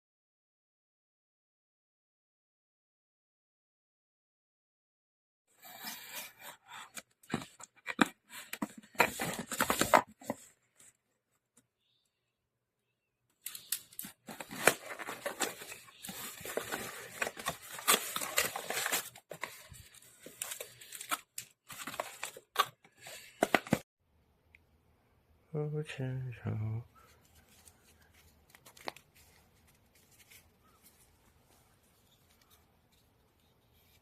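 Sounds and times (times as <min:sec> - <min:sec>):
packaging tearing and crinkling: 0:13.5 - 0:23.7.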